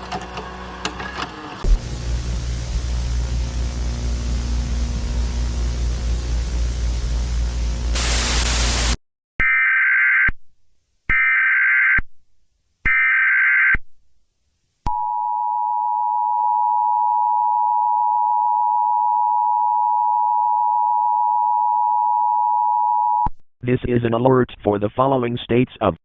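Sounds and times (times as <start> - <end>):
burst of static: 1.6 - 9.0
data bursts: 7.9 - 9.0.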